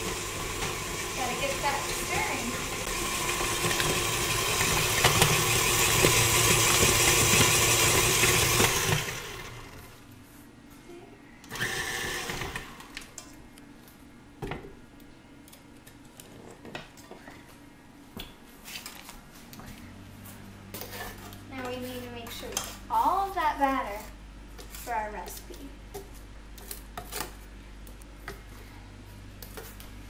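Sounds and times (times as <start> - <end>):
electric hand mixer running: 0.0 - 10.0, 11.5 - 13.0.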